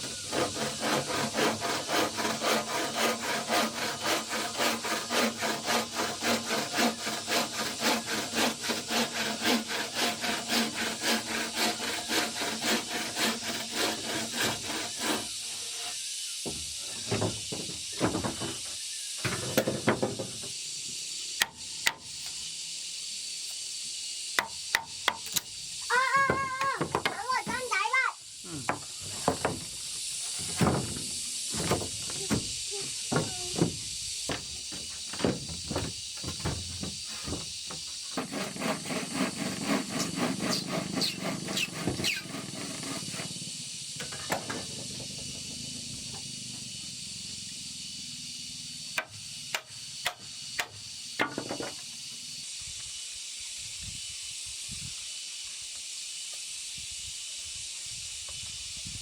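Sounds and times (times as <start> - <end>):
steady high hiss: 0.0 - 59.0
knocks and thuds: 16.4 - 18.6, 30.4 - 37.8.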